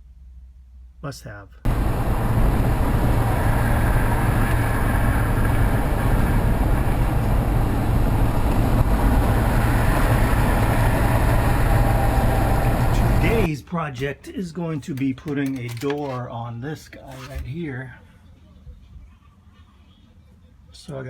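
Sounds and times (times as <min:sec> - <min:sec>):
constant hiss: 0:00.0 - 0:13.5
vehicle engine drone: 0:01.7 - 0:13.5.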